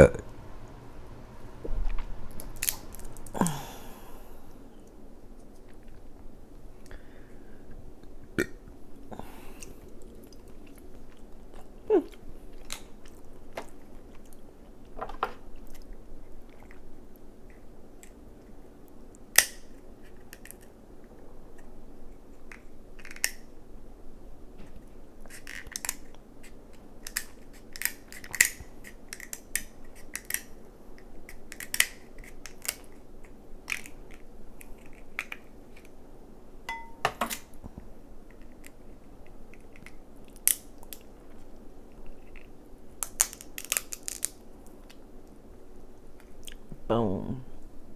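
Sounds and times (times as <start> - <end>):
crab shells cracking: 2.0 - 4.3, 25.3 - 36.0, 38.3 - 41.2, 42.1 - 45.0
chewing: 9.4 - 18.6, 38.4 - 45.0.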